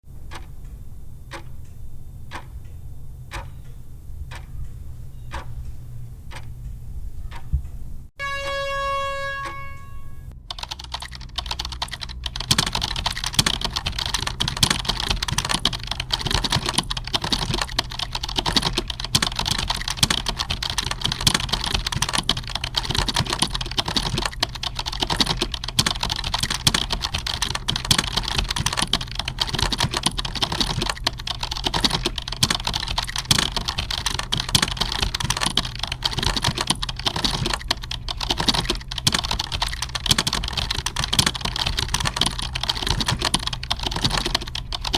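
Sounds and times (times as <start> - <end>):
steady low hum: 0.0 - 44.9
computer keyboard typing: 10.5 - 44.9.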